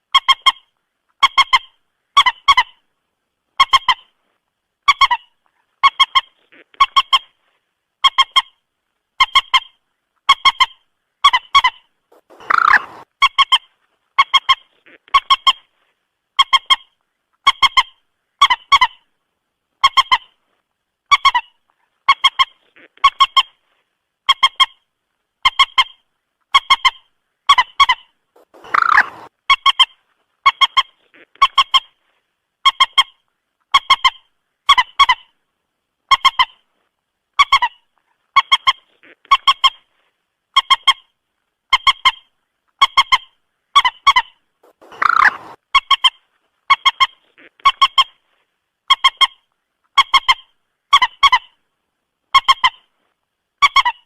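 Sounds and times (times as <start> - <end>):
moorhen honking calls: 12.1 - 13.1, 28.4 - 29.3, 44.6 - 45.6.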